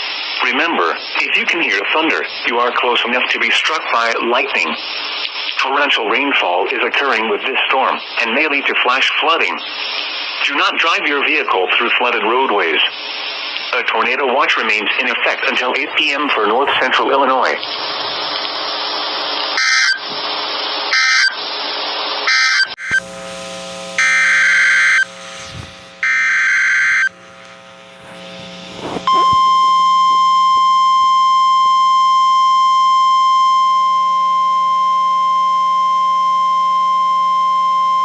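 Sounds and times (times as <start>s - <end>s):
screeching electronic data bursts: 19.6s - 20.0s, 20.9s - 21.4s, 22.3s - 23.1s, 24.0s - 27.1s
steady alarm tone: 19.6s - 20.0s, 20.9s - 21.4s, 22.3s - 38.0s.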